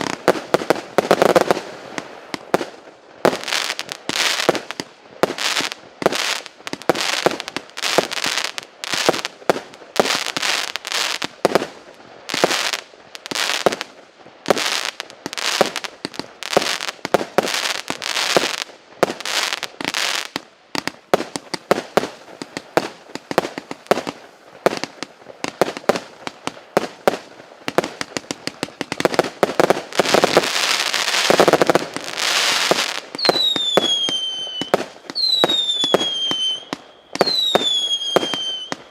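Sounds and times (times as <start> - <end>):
firework cake firing: 0.0 - 38.9
firework crackling: 0.0 - 38.9
falling firework whistles: 30.0 - 38.9.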